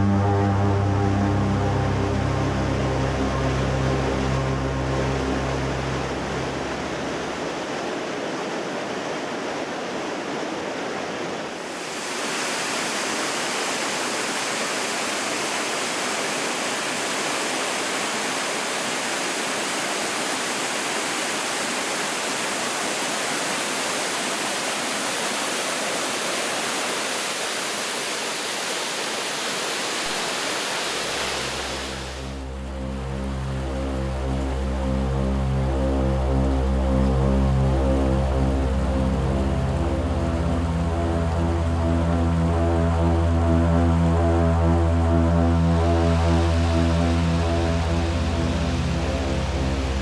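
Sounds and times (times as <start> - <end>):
waterfall rushing: 0.0 - 32.6, 45.3 - 50.0.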